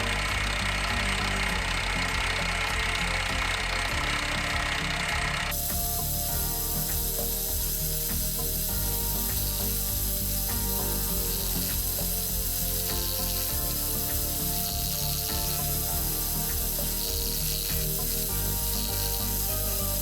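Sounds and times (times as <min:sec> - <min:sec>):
steady machine tones: 0:00.0 - 0:20.0
faint irregular ticks: 0:05.6 - 0:20.0.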